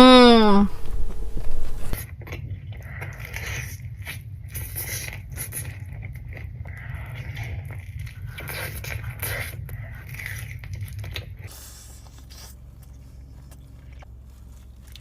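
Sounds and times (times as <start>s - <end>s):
pizza being chewed: 1.5s - 15.0s.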